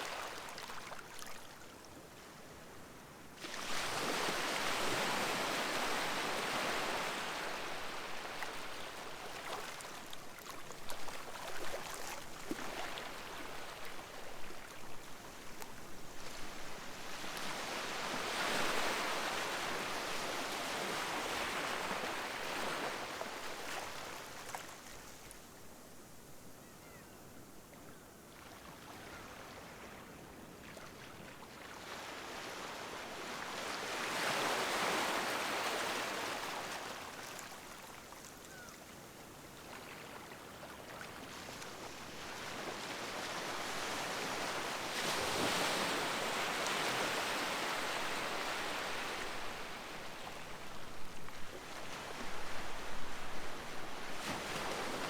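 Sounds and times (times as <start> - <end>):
sea waves breaking on beach: 3.4 - 9.8.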